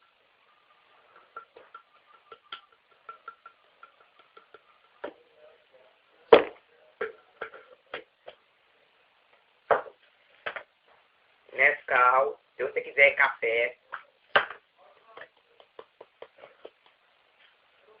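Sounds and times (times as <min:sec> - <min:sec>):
kitchen items knocking and clunking: 0:00.8 - 0:05.2, 0:06.3 - 0:08.4, 0:09.7 - 0:10.8, 0:14.0 - 0:17.0.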